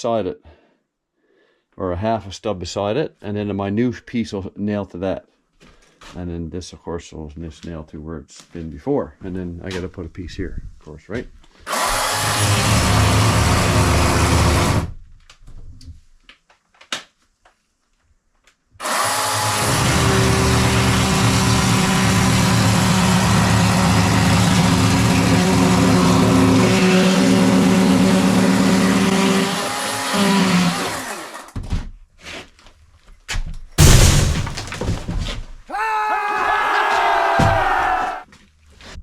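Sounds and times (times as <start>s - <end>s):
power saw cutting: 11.7s - 14.8s, 18.8s - 31.5s
knocks and loud thunk: 33.8s - 35.5s.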